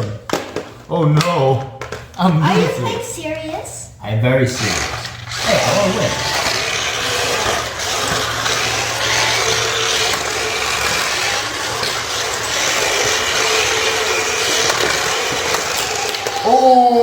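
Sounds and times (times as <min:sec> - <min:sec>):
toy car electric motors whirring: 0:04.5 - 0:17.0.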